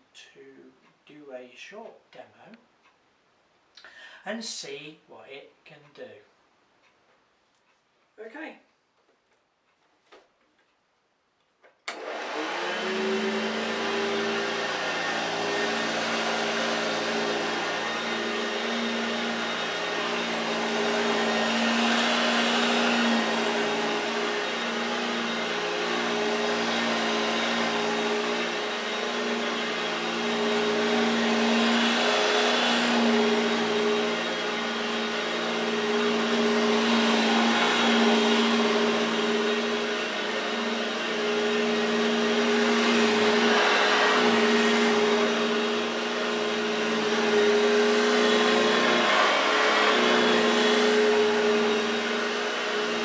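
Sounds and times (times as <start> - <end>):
vacuum cleaner running: 11.9 - 53.0.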